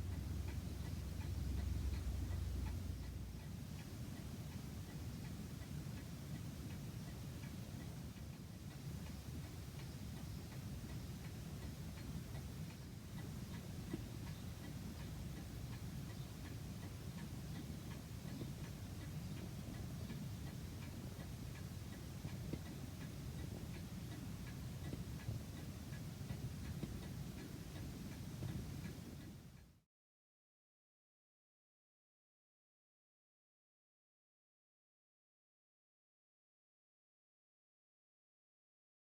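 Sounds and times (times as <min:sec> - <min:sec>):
grandfather clock ticking: 0:00.0 - 0:03.9
low steady rumble: 0:00.0 - 0:04.2.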